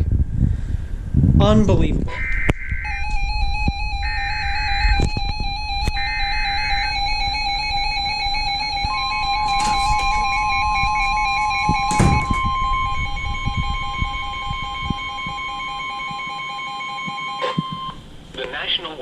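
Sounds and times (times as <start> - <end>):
weather radio alarm tone: 2.1 - 18.7
electronic background music: 2.8 - 16.4.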